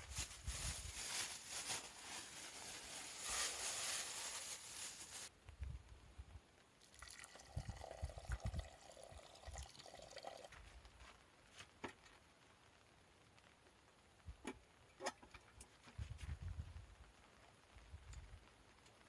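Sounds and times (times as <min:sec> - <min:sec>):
liquid pouring: 0:06.8 - 0:10.5.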